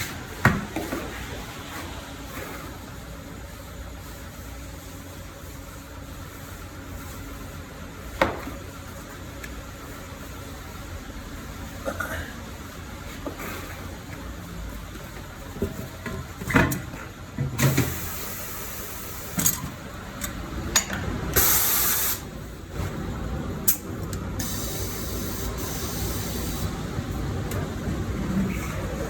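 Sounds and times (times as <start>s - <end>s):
compressed air hissing: 21.4s - 22.3s, 24.4s - 26.7s.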